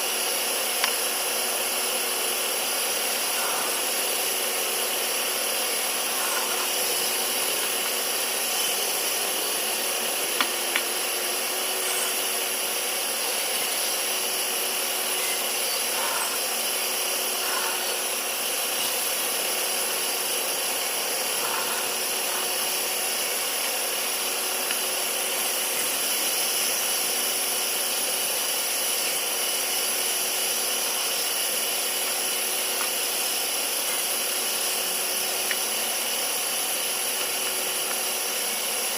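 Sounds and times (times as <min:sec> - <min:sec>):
bandsaw cutting wood: 0:01.9 - 0:27.8.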